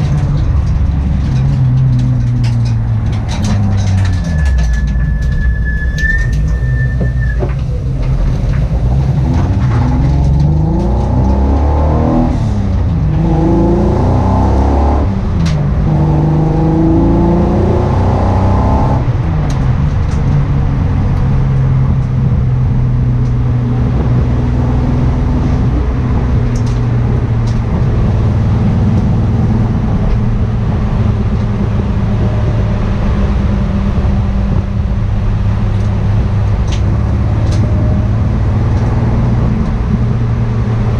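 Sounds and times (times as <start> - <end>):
car engine misfiring: 0.0 - 17.5.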